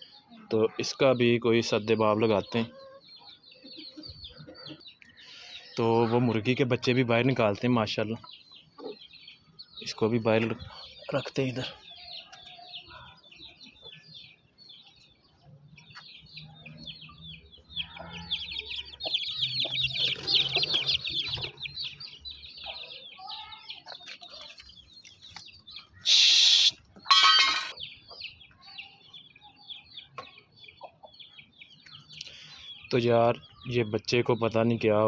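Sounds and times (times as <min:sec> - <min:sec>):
chicks peeping: 0:00.0 - 0:35.0
hens clucking: 0:01.7 - 0:05.2, 0:15.8 - 0:22.9, 0:26.0 - 0:28.5
loud harsh squawks: 0:26.0 - 0:27.8.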